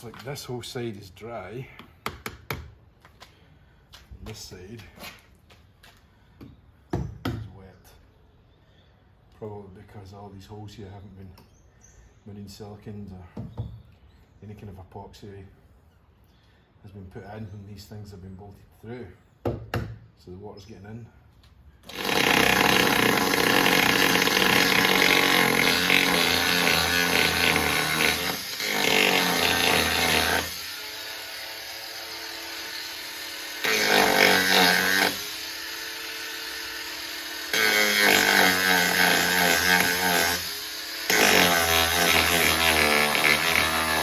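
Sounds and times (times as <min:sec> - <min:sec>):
power tool cutting fibreglass: 0:21.8 - 0:44.0.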